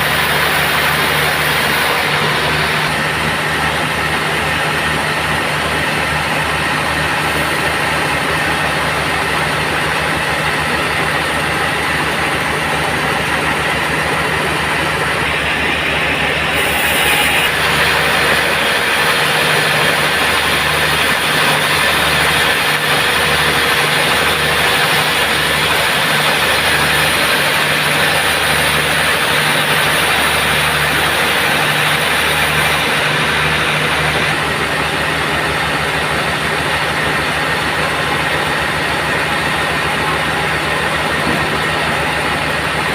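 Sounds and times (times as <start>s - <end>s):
band sawmill humming: 0.0s - 42.9s.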